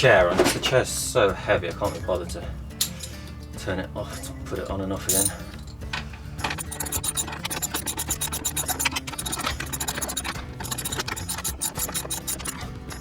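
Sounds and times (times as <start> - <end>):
metal parts clicking and scraping: 6.4 - 12.7.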